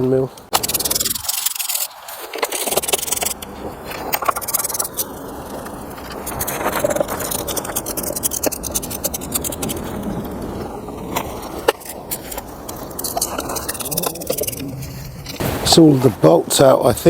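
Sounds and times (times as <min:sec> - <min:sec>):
ratchet clicking and scraping: 0:00.5 - 0:03.4, 0:06.1 - 0:10.0.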